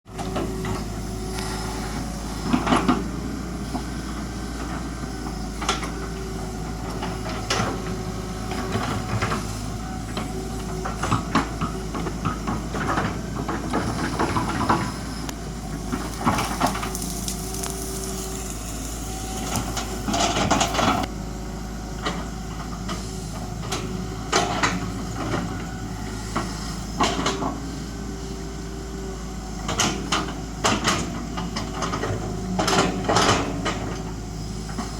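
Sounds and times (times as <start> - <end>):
diesel engine under load: 0.0 - 34.9
hydraulic hiss: 1.3 - 2.5.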